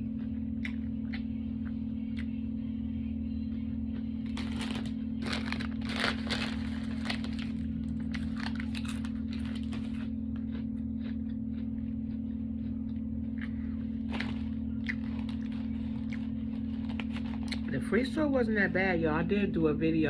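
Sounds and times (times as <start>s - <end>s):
low hum: 0.0s - 20.0s
sandwich chewing crunches: 3.5s - 17.7s.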